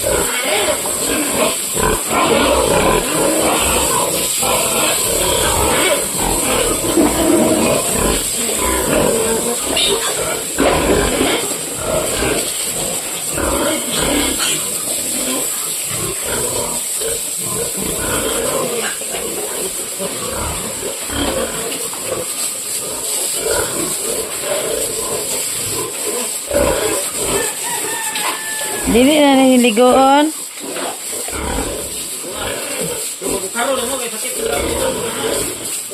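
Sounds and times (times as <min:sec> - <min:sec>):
pigs grunting: 0:00.0 - 0:29.1, 0:30.4 - 0:35.9
steady high hiss: 0:00.0 - 0:35.9.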